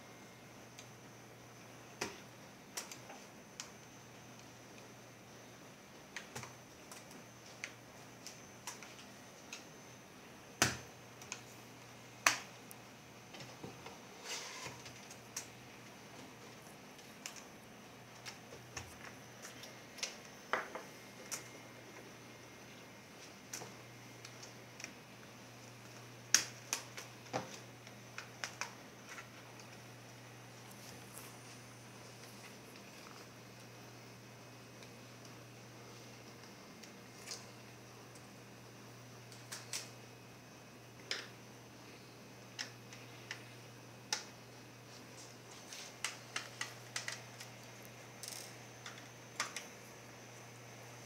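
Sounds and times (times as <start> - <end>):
faint steady hum: 0.0 - 51.0
small clicks and taps of parts: 25.9 - 29.8, 42.6 - 43.5, 45.2 - 49.7.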